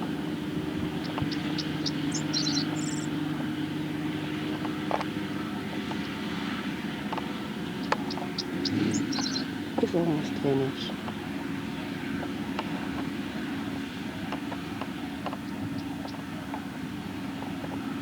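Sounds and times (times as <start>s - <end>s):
tractor engine running: 0.0s - 18.0s
high bird chirps: 1.0s - 3.2s, 7.8s - 9.5s.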